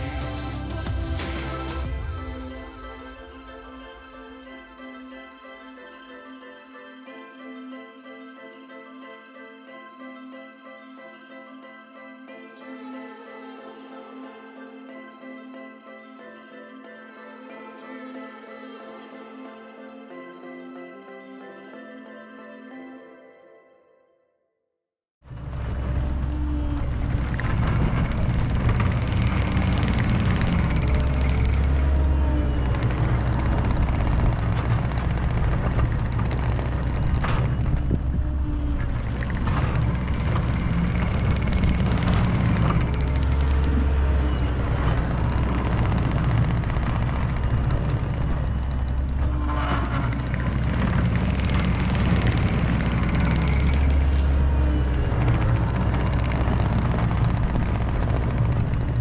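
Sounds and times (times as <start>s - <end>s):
diesel engine revving: 25.3s - 59.0s.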